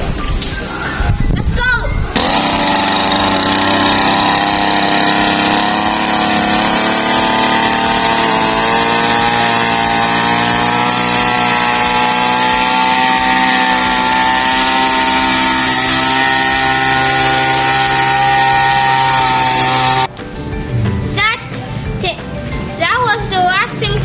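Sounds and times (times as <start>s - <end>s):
motor humming steadily: 2.1s - 20.2s.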